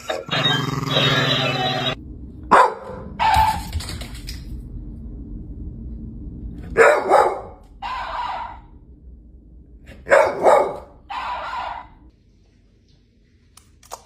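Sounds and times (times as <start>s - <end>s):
dog barking: 2.5s - 3.5s, 6.8s - 8.7s, 10.1s - 11.9s.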